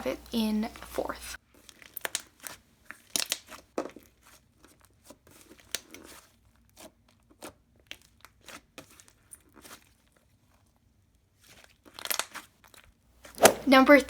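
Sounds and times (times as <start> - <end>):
slime crackling and clicking: 1.7 - 3.6
slime tearing smear: 13.4 - 13.8.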